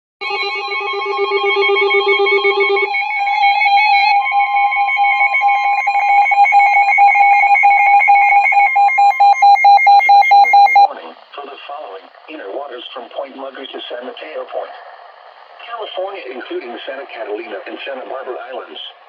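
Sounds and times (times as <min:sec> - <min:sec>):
steady single tone: 0:00.2 - 0:10.9
weather radio alarm beeping: 0:00.2 - 0:10.9.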